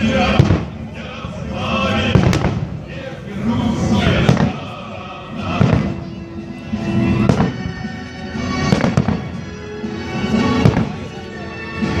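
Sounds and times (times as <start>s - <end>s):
fireworks bursting: 0.0s - 0.9s, 1.9s - 3.0s, 3.8s - 6.2s, 6.9s - 9.6s, 10.3s - 11.2s
loud music with held notes: 0.0s - 12.0s.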